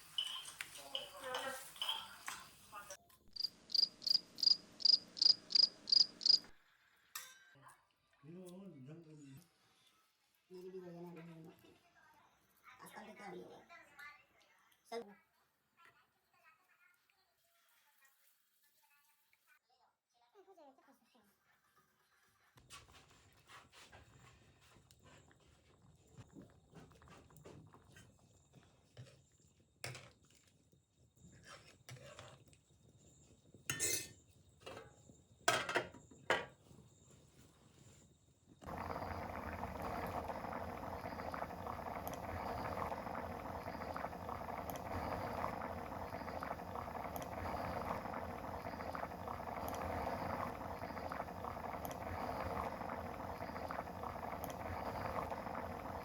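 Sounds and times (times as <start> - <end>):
utensils and dishes clinking: 0.0 - 2.6
pot boiling and bubbling: 0.0 - 6.7, 22.6 - 56.0.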